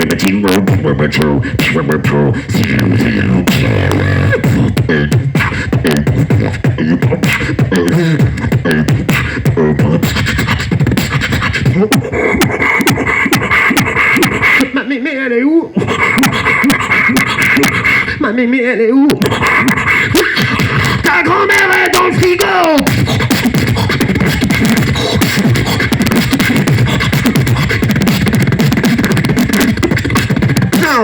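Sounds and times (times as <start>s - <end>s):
beatboxed rhythm: 0.0s - 15.0s, 15.6s - 31.0s
warbling vocal noises: 0.0s - 31.0s.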